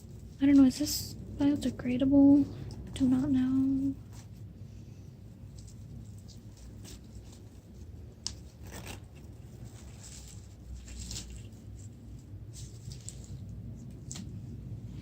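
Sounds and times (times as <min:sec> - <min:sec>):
packaging wrap rustling: 0:05.4 - 0:14.4.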